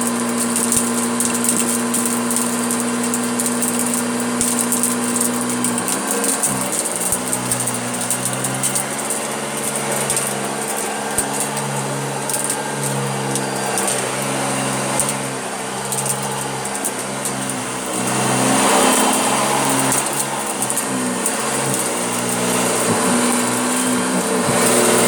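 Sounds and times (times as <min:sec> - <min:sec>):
debris clicking in vacuum: 0:00.0 - 0:25.0
upright vacuum cleaner running: 0:00.0 - 0:25.0.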